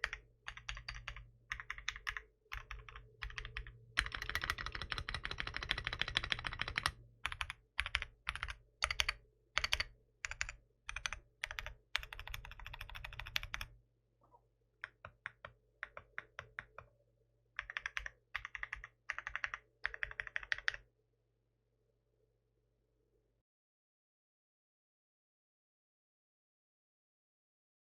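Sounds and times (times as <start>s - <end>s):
mechanical keyboard typing: 0.0s - 13.7s, 14.8s - 16.9s, 17.6s - 20.8s.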